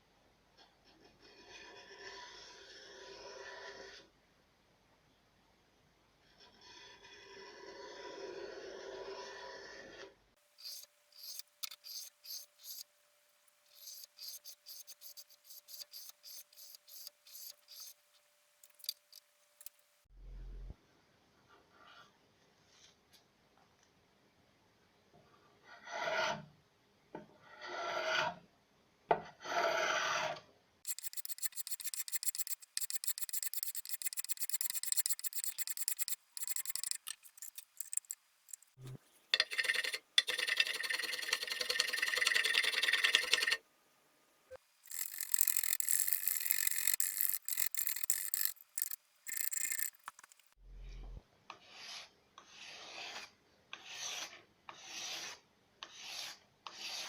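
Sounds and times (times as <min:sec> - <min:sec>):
rasp scraping wood: 0:30.9 - 0:43.6, 0:44.9 - 0:50.4.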